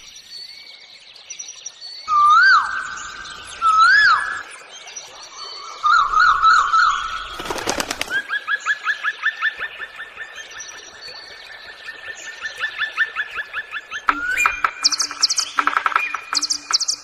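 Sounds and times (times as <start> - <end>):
bird whistle rising and falling: 2.1 - 4.4
bird warbling trill: 14.0 - 17.0.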